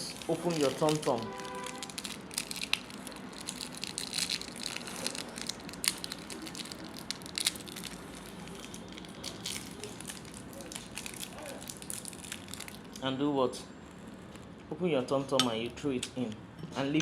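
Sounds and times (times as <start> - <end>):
sweet wrapper crinkling: 0.0 - 13.0.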